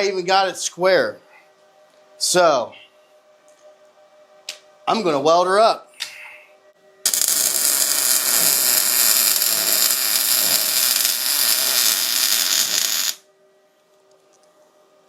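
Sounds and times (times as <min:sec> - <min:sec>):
welder arc crackling: 0:07.1 - 0:13.2.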